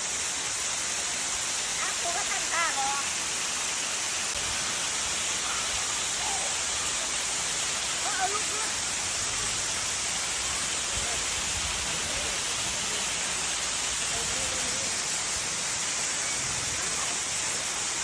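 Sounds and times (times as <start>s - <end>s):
waterfall rushing: 0.0s - 18.0s
faint voices: 1.3s - 18.0s.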